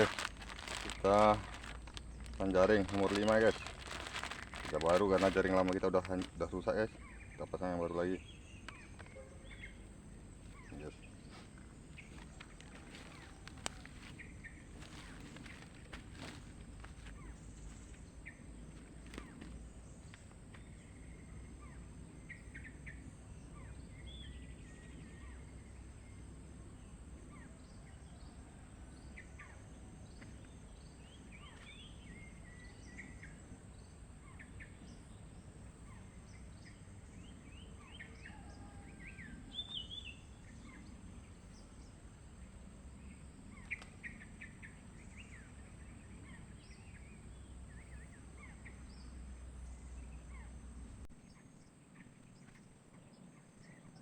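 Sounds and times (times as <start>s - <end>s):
low outdoor rumble: 0.0s - 37.9s
wild birds chirping: 0.0s - 54.0s.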